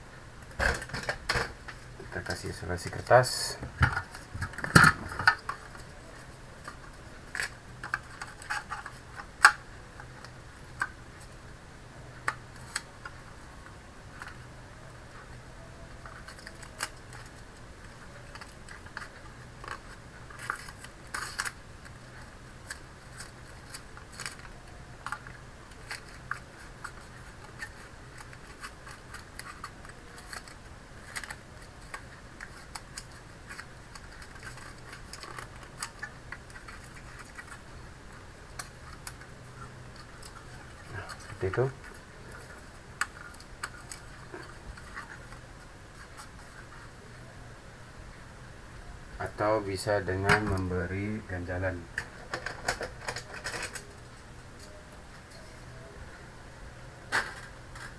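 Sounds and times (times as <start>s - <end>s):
faint low hum: 0.0s - 57.9s
hands handling masking tape: 0.6s - 11.4s, 16.0s - 46.9s.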